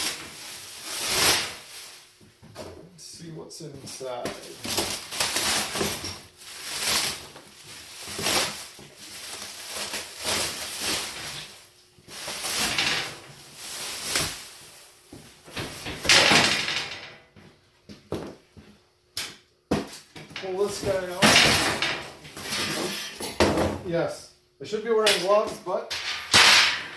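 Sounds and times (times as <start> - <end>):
plastic shrink wrap rustling: 0.0 - 2.7, 3.8 - 16.7, 20.4 - 23.0.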